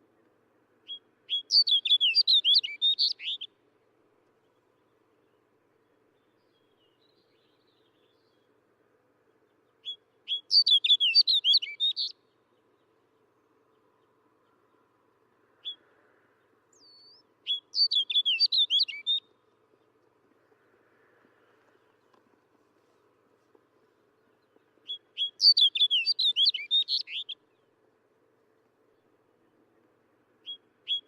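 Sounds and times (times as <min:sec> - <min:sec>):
bird warbling song: 0:00.9 - 0:03.5, 0:09.4 - 0:13.0, 0:16.7 - 0:19.3, 0:23.1 - 0:27.7, 0:30.4 - 0:31.0.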